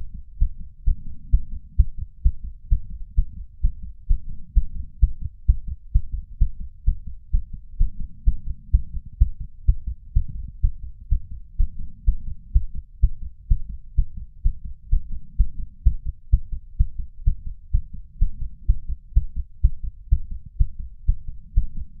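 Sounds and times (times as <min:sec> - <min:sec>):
heartbeat thumps: 0:00.0 - 0:22.0.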